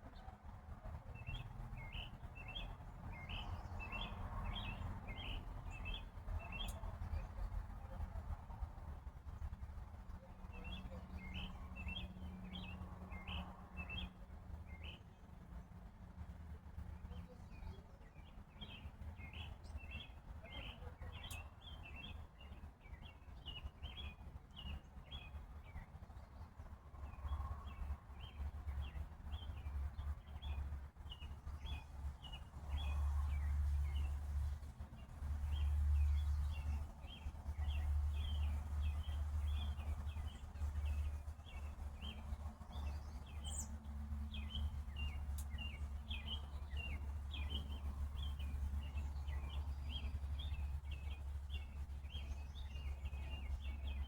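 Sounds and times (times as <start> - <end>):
bird chirping: 35.4 - 54.0.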